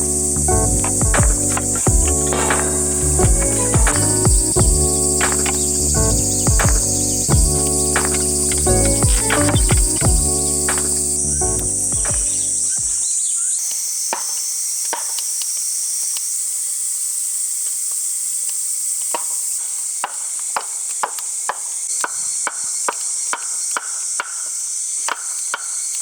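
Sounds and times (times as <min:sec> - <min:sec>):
music: 0:00.0 - 0:12.8
crickets and insects trilling: 0:00.0 - 0:26.0.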